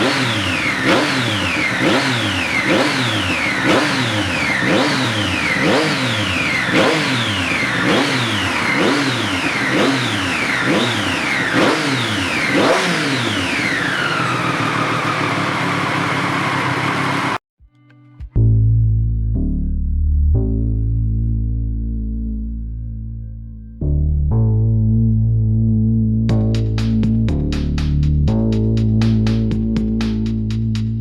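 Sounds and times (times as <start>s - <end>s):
motorcycle engine idling: 0.0s - 17.4s
motorcycle engine revving: 0.0s - 17.4s.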